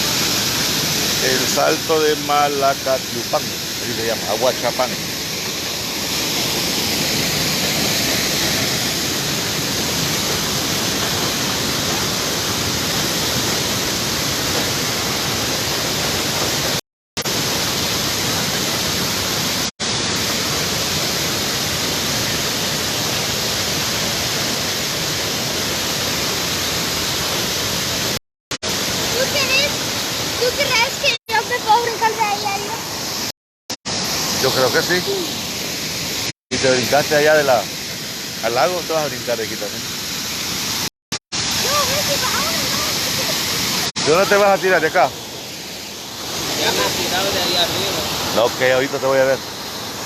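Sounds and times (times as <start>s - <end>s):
waterfall rushing: 0.0s - 33.3s, 33.9s - 50.0s.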